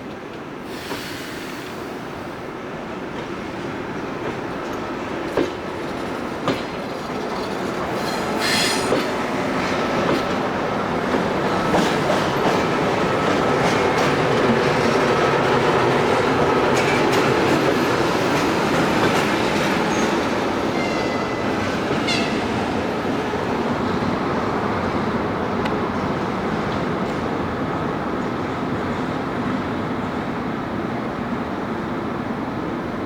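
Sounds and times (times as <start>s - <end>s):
train wheels rumbling on rails: 0.0s - 33.0s.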